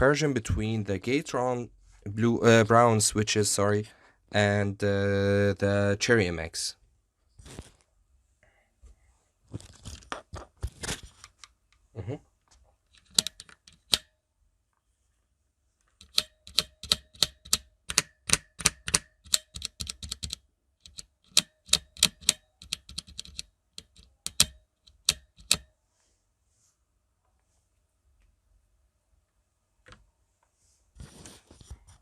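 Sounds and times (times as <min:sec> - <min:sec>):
mechanical keyboard clacking: 0:13.0 - 0:14.0, 0:16.0 - 0:25.6.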